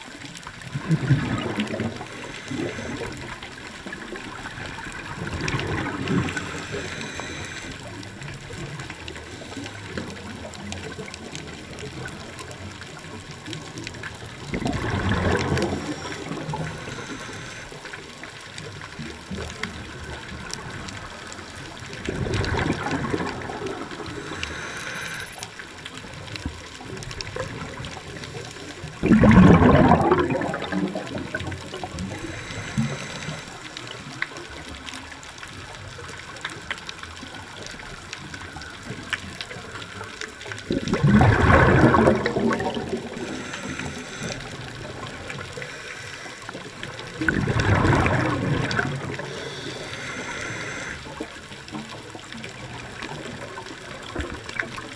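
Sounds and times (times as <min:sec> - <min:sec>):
underwater hiss: 0:00.2 - 0:12.9, 0:14.4 - 0:18.3, 0:19.3 - 0:26.9, 0:27.6 - 0:34.7, 0:35.6 - 0:51.4
air bubbling underwater: 0:14.5 - 0:17.1, 0:29.0 - 0:33.3, 0:40.7 - 0:45.8, 0:46.9 - 0:49.5.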